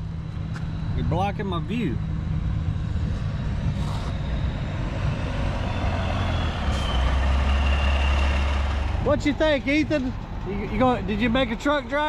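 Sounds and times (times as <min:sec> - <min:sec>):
excavator diesel engine running: 0:03.9 - 0:12.0.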